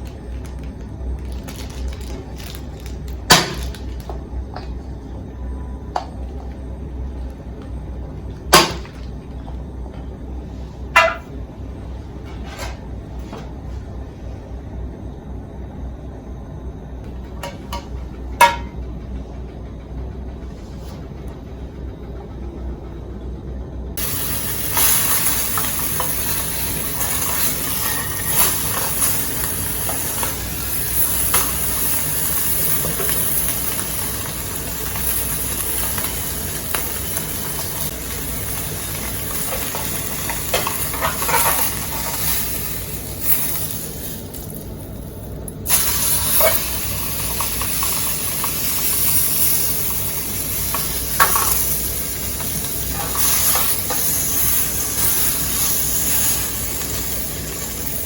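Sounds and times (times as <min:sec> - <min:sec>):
steak sizzling in a tin: 0:24.0 - 0:45.1, 0:45.7 - 0:58.0.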